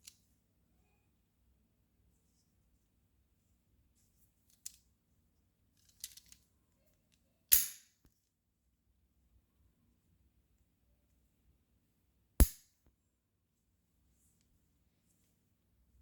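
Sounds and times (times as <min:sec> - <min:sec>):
small metal clicks: 0:05.8 - 0:06.4
sharp metal snap: 0:07.5 - 0:07.9, 0:12.4 - 0:12.6.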